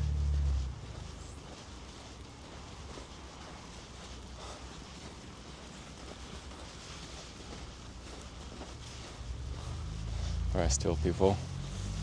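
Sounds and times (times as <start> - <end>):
low steady rumble: 0.0 - 1.7, 8.6 - 12.0
footsteps in snow: 0.2 - 12.0.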